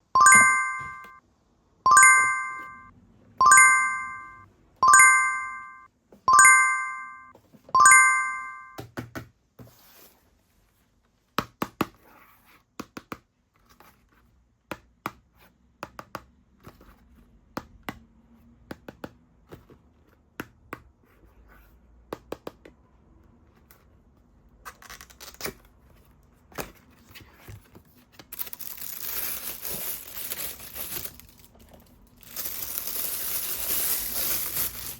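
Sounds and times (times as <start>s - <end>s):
bright chime strikes: 0.2s - 1.2s, 1.9s - 8.8s
box and packaging being handled: 24.7s - 34.9s
plastic wrapping crinkling: 28.3s - 34.9s.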